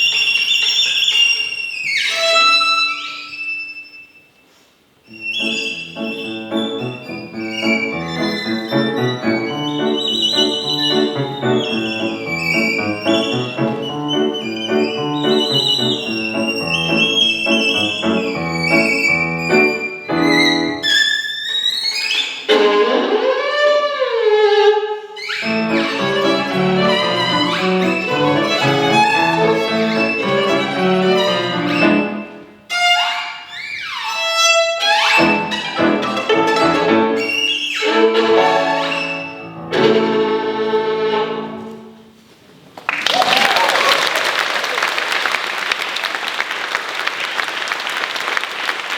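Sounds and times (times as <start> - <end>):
violin playing: 0.0 - 4.1, 5.0 - 42.0
piano chords: 5.1 - 20.9, 25.4 - 32.6, 35.0 - 42.0.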